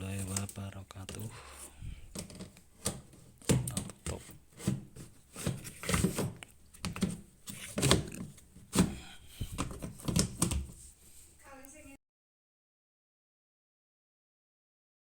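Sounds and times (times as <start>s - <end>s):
knocks and clattering thumps: 2.0s - 10.8s.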